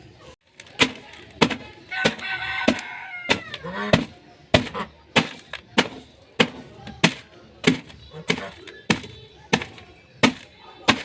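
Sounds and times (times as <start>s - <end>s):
dry bread cracking: 0.4s - 11.0s.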